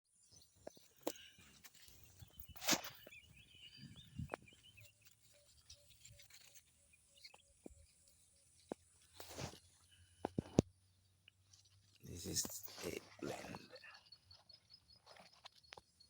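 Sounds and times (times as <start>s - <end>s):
faint bird chirps: 0.1s - 16.0s
rustles and clicks: 0.7s - 6.7s.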